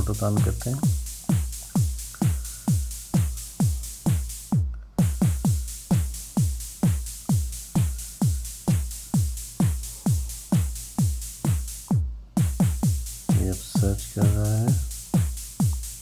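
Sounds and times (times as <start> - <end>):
electronic music with kick drum beat: 0.0 - 16.0.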